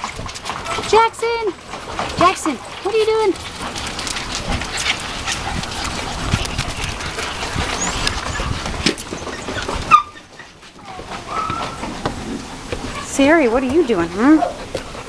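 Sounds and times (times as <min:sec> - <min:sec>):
dogs scuffling: 0:00.0 - 0:15.0
small dogs yipping: 0:04.4 - 0:11.9.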